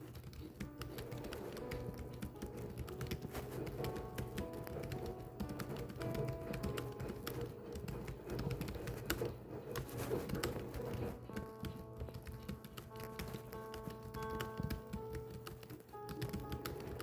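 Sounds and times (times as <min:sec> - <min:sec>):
soft background music: 0:00.0 - 0:17.0
typewriter keys clicking: 0:00.0 - 0:17.0.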